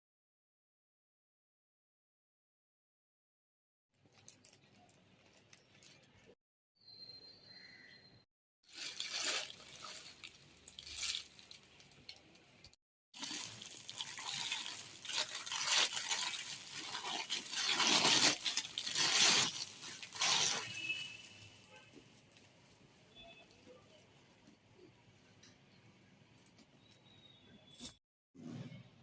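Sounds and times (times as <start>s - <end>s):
plastic packaging crinkling: 8.7s - 22.4s.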